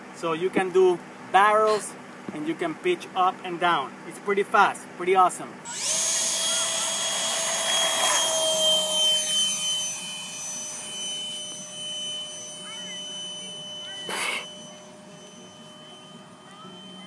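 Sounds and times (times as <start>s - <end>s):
model jet fan whining: 5.6s - 17.0s.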